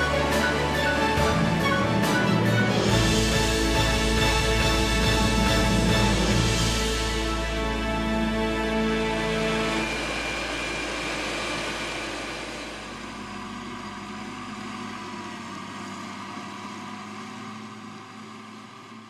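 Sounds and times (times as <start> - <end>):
machine hum with hiss: 2.5 - 16.2.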